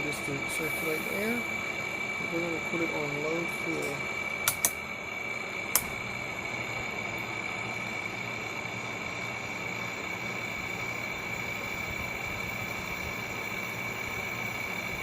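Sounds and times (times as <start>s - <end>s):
fan running with high whine: 0.0s - 15.0s
air conditioner control clicks: 3.7s - 4.8s, 5.7s - 6.0s.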